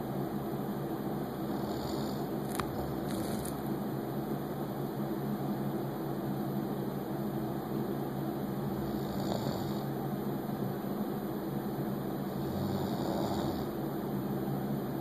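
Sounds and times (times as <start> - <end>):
steady mechanical hum: 0.0 - 15.0
person snoring: 1.4 - 3.6, 8.8 - 9.9, 12.3 - 13.8.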